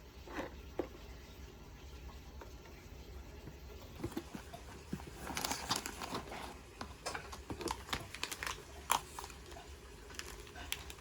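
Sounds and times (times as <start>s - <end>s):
packaging crinkling and rustling: 3.9s - 11.0s.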